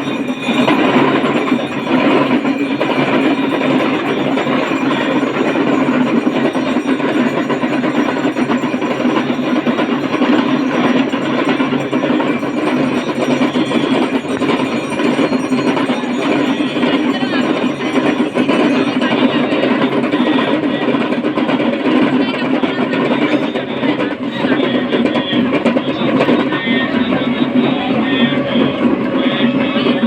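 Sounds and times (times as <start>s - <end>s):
hourglass hand drums rattling: 0.0s - 22.0s.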